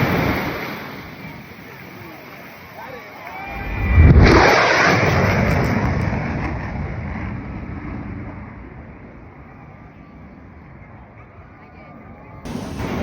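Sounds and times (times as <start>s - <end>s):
jet roaring past: 3.2s - 9.4s, 12.5s - 13.0s.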